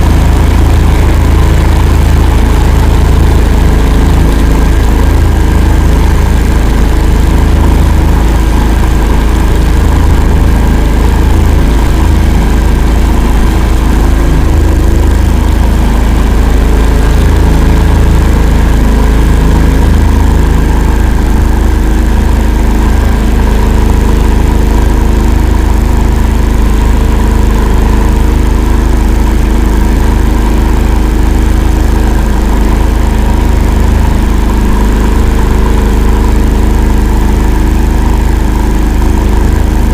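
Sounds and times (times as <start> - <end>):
steady hum: 0.0 - 39.9
vehicle engine rumbling: 0.0 - 39.9.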